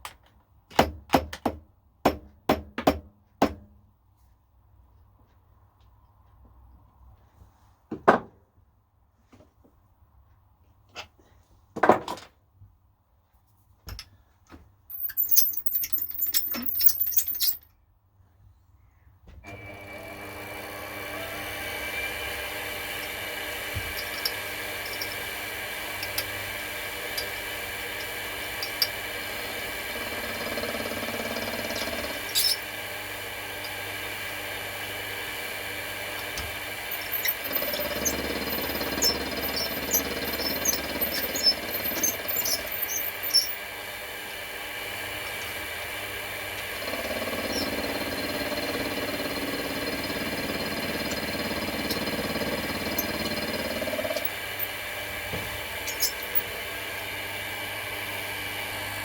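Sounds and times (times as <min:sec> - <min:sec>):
handling knocks and clicks: 0:13.8 - 0:17.6, 0:36.2 - 0:43.6, 0:55.3 - 0:56.4
milling machine motor whining: 0:19.5 - 0:43.7, 0:46.6 - 0:58.6.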